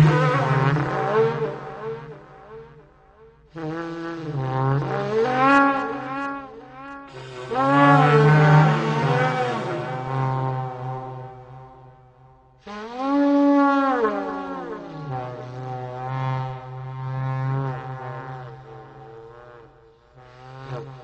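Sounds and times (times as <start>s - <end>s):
wavering horn-like tones: 6.9s - 14.4s.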